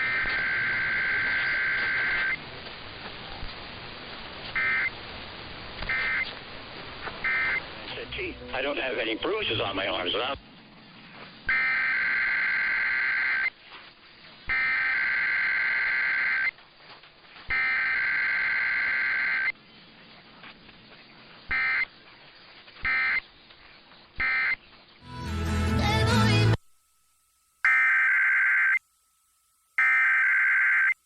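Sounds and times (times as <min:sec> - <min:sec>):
electronic data bursts: 0:00.0 - 0:02.4, 0:04.5 - 0:05.0, 0:05.9 - 0:06.3, 0:07.2 - 0:10.4, 0:11.4 - 0:13.6, 0:14.5 - 0:16.6, 0:17.5 - 0:19.6, 0:21.5 - 0:21.9, 0:22.8 - 0:23.3, 0:24.2 - 0:24.6, 0:27.6 - 0:28.8, 0:29.8 - 0:31.0.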